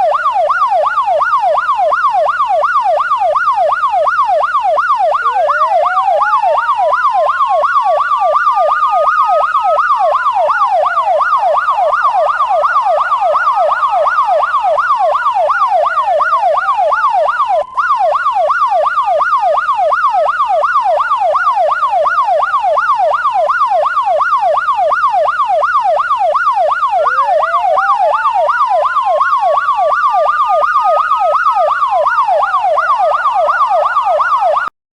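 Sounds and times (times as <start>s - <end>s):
siren wail: 0.0s - 34.7s
siren yelp: 0.0s - 34.7s.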